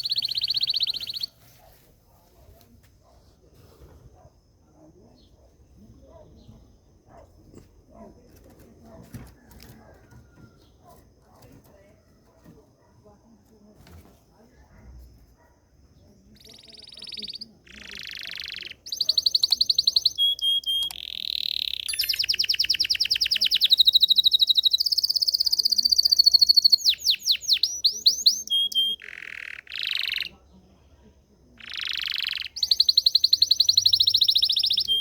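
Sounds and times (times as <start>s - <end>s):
canary singing trills: 0.0s - 1.7s, 15.9s - 30.6s, 31.5s - 35.0s.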